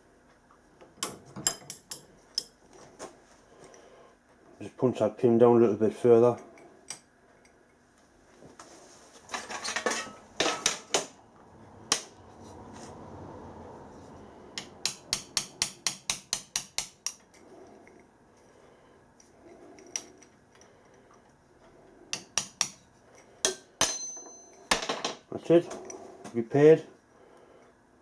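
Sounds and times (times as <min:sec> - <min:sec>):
hammer tapping metal punch: 0:14.6 - 0:17.4, 0:22.1 - 0:22.8, 0:23.4 - 0:24.9.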